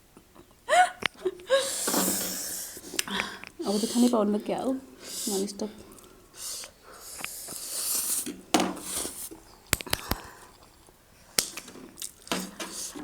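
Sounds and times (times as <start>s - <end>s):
noodles slurped: 1.6s - 4.2s, 5.0s - 13.0s
utensil clicking against bowl: 9.7s - 10.4s.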